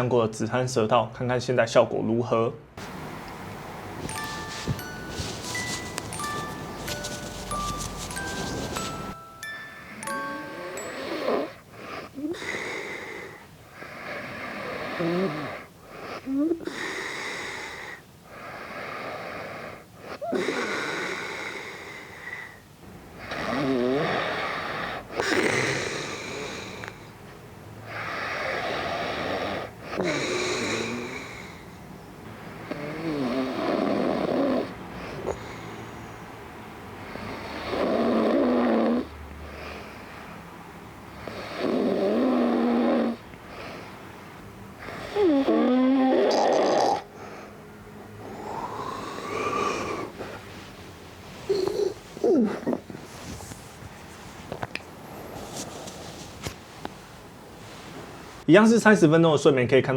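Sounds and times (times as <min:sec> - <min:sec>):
man snoring: 0:10.8 - 0:15.7, 0:23.3 - 0:26.9, 0:28.0 - 0:31.6, 0:32.7 - 0:34.8, 0:37.2 - 0:39.1, 0:41.2 - 0:43.2, 0:44.8 - 0:47.1, 0:48.2 - 0:50.1.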